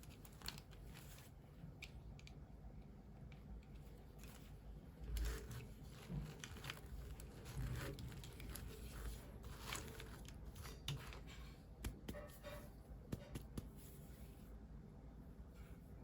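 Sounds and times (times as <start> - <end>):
packaging rustling and crinkling: 0.0 - 1.4, 4.2 - 11.5.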